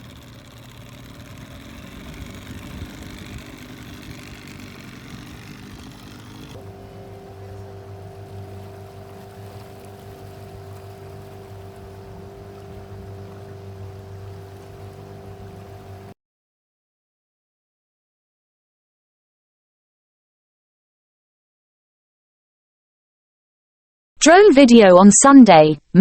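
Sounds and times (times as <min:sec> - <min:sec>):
motorboat engine running: 0:00.0 - 0:16.2
water noise: 0:00.0 - 0:16.2
wind noise: 0:02.0 - 0:04.4.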